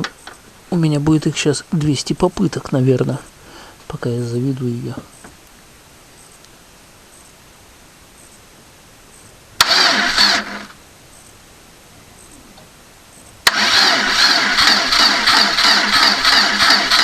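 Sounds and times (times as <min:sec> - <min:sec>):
engine starter cranking: 0:09.6 - 0:10.8, 0:13.4 - 0:17.0.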